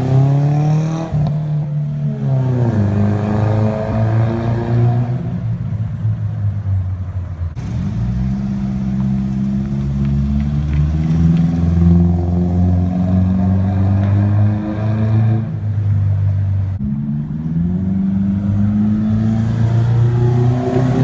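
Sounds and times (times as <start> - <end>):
car exhaust drone: 4.9 - 21.0.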